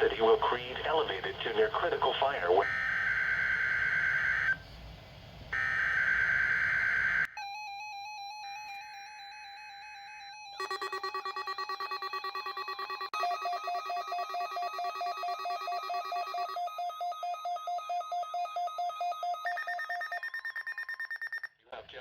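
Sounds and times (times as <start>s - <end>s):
warbling alarm tone: 2.6s - 4.6s, 5.6s - 21.5s
rapid pulsing electronic beeps: 8.1s - 21.5s.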